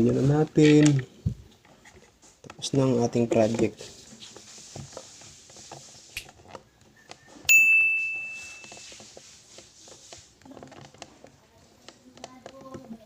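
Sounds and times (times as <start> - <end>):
bright ding: 7.5 - 8.8
small clicks and taps: 9.9 - 13.0.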